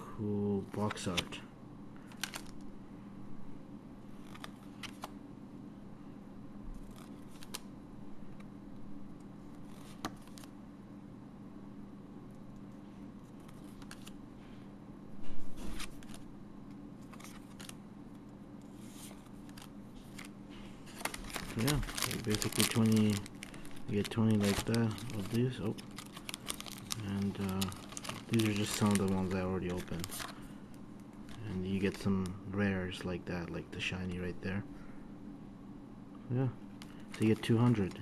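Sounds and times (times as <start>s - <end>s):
faint steady hum: 0.0s - 38.0s
trading cards clicking and rustling: 2.0s - 2.6s, 4.2s - 5.1s, 6.8s - 7.7s, 13.3s - 14.2s, 15.6s - 17.8s, 18.8s - 30.4s, 36.8s - 38.0s.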